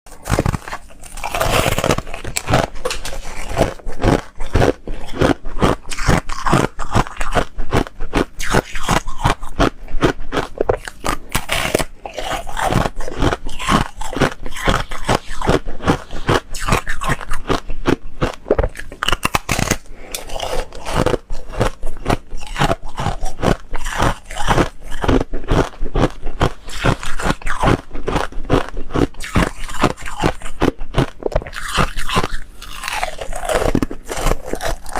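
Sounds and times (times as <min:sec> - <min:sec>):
foam ice crunching: 0:00.1 - 0:04.2.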